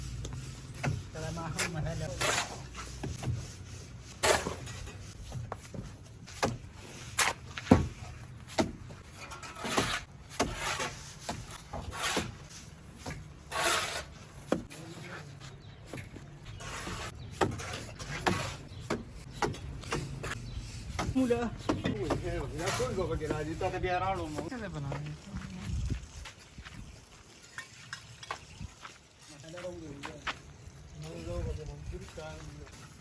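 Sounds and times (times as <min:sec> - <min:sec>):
trowel knocking and scraping bricks: 0:00.1 - 0:25.2.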